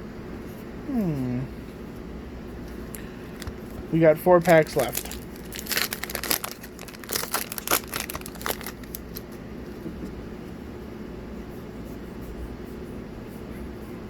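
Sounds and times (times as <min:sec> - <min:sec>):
low room hum: 0:00.0 - 0:14.0
foil wrapper crinkling and tearing: 0:02.9 - 0:09.3.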